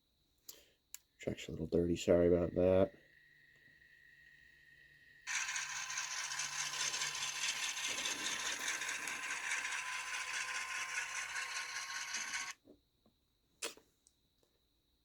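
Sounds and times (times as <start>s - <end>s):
model train speaker engine hiss: 4.6s - 12.6s.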